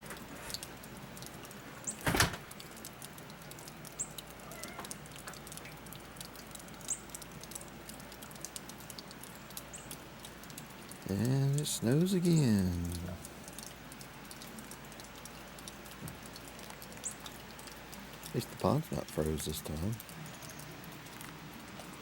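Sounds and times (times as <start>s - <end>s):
faint steady hiss: 0.0s - 22.0s
light ticks: 0.1s - 11.6s.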